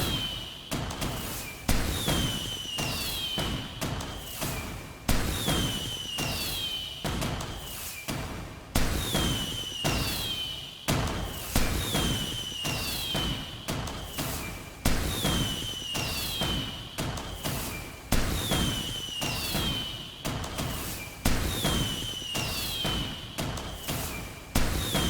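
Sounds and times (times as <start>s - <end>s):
high falling firework whistle: 0.0s - 0.5s, 2.0s - 3.6s, 9.0s - 10.7s, 11.3s - 13.6s, 15.1s - 16.7s, 18.4s - 20.1s, 20.8s - 25.0s
fireworks bangs with crackle: 0.0s - 25.0s.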